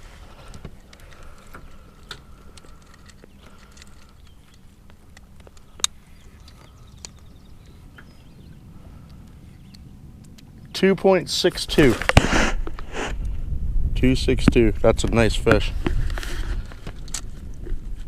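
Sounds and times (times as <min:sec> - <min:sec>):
steady low rumble: 0:00.0 - 0:18.0
clicks and knocks of gear: 0:00.4 - 0:07.3, 0:15.8 - 0:18.0.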